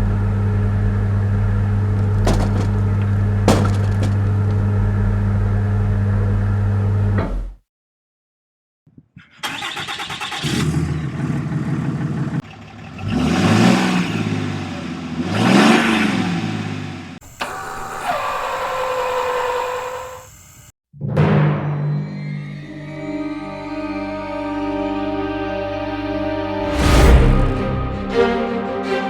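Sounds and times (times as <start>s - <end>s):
engine starting and revving: 9.4s - 16.9s.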